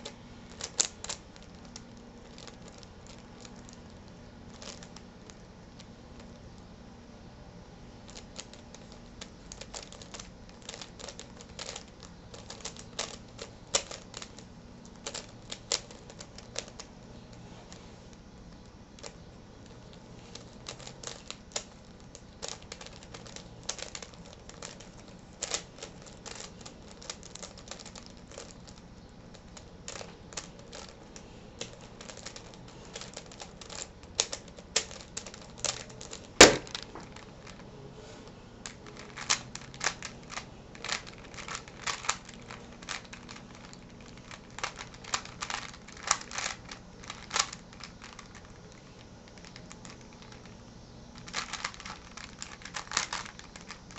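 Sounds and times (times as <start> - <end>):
puzzle cube plastic clicks: 0.0 - 6.6, 8.0 - 17.0, 18.4 - 37.6, 38.6 - 53.9
sharp loud knock: 36.4 - 36.7.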